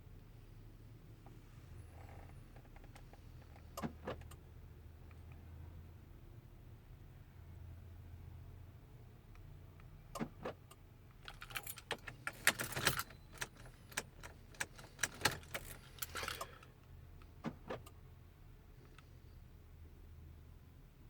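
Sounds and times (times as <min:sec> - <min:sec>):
keys jangling: 0:11.3 - 0:16.7.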